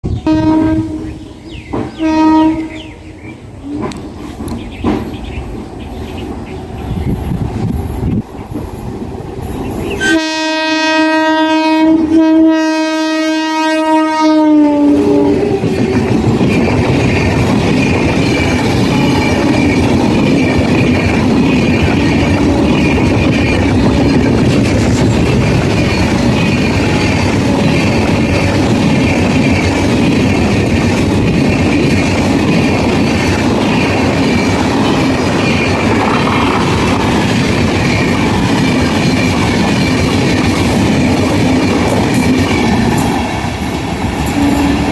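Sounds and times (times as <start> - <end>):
train coaches rumbling by: 0.0 - 44.9
locomotive horn blasts: 0.2 - 1.2, 2.0 - 2.8, 10.0 - 15.6, 18.8 - 19.8, 44.3 - 44.9.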